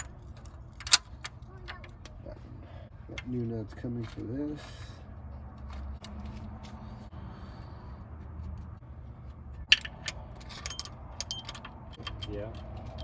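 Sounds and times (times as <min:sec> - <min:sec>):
metal parts and tools clinking: 0:00.0 - 0:02.1, 0:09.7 - 0:13.0.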